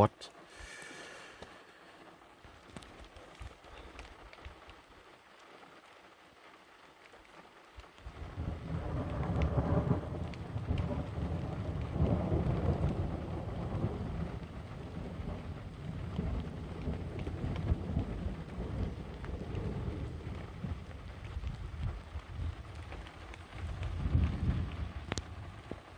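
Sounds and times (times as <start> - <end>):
rain falling: 0.0 - 25.9
thunder rumbling: 8.0 - 25.9.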